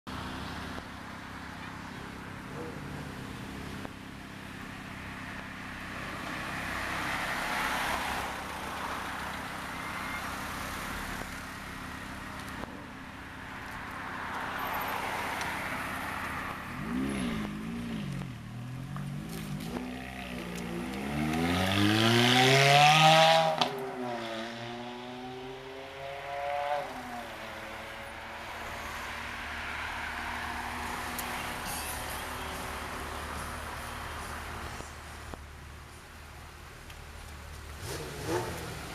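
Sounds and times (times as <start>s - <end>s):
sports car engine revving: 16.8s - 28.4s, 37.7s - 38.9s.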